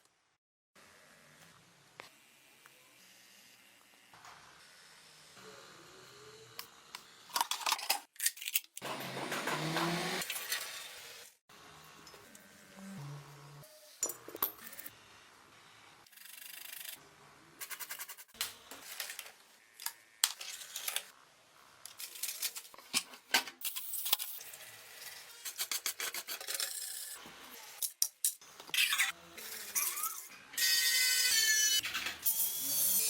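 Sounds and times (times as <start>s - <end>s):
scraping metal parts: 7.3s - 9.6s.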